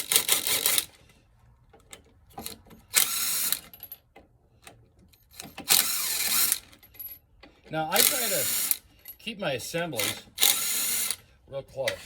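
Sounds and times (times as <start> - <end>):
power tool running: 0.0 - 1.0, 5.6 - 6.8, 8.0 - 8.8, 10.0 - 11.2.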